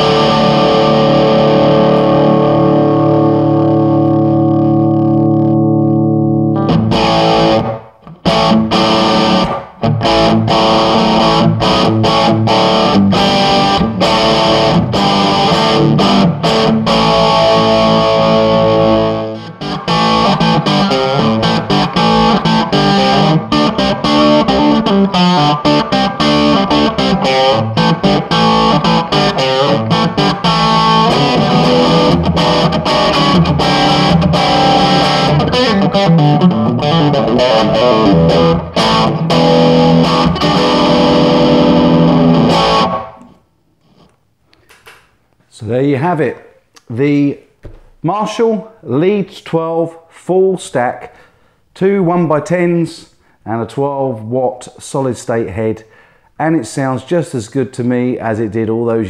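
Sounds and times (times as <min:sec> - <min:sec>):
distorted electric guitar riffing: 0:00.0 - 0:44.1.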